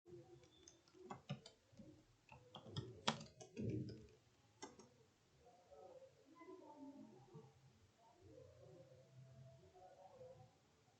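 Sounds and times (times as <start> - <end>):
keyboard keys clicking: 0.4 - 4.9.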